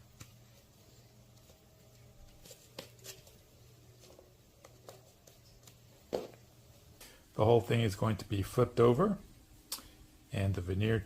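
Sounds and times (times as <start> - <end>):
tape and veneer crackling: 0.0 - 7.2.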